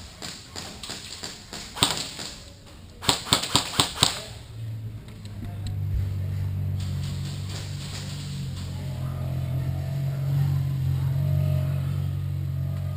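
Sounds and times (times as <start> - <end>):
airsoft gun shots: 0.0 - 4.4
low steady drone: 4.4 - 12.9.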